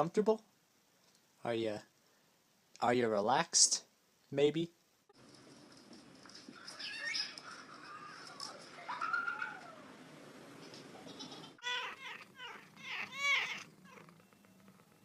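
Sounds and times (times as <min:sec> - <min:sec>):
cat meowing: 0:11.6 - 0:14.9.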